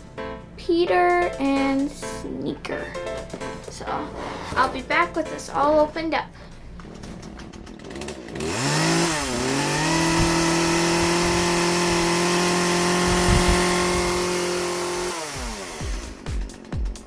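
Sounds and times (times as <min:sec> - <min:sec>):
motor hum: 0:05.6 - 0:16.9.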